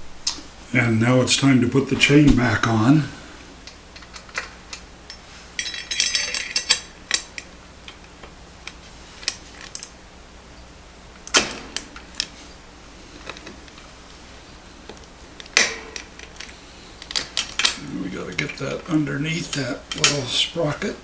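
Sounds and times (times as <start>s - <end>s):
metal clinks: 5.1s - 6.9s
metal chain links rattling: 5.6s - 6.9s.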